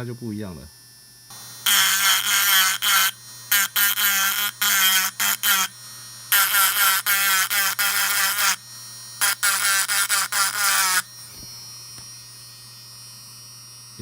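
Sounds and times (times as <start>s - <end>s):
engraving pen motor hum: 0.0s - 14.0s
spinning bit screeching: 1.6s - 8.6s, 9.2s - 11.1s.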